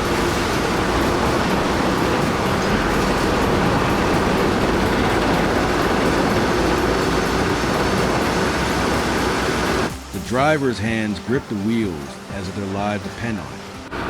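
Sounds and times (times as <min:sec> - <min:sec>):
heavy vehicles rumbling: 0:00.0 - 0:09.9.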